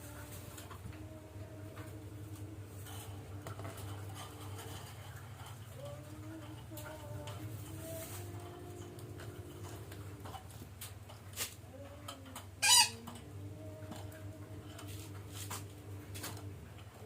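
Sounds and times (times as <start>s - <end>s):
faint low hum: 0.0s - 17.0s
faint clicks: 5.5s - 15.2s
parakeet screech: 12.6s - 13.0s.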